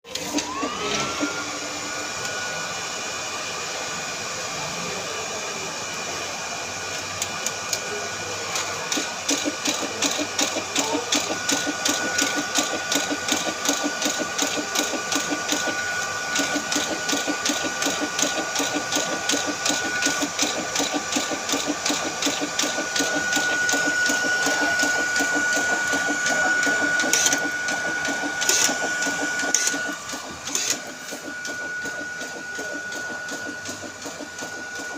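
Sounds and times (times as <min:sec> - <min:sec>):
electric motor whining: 0:00.1 - 0:02.8, 0:09.0 - 0:34.9
fast even clicking: 0:08.9 - 0:34.9.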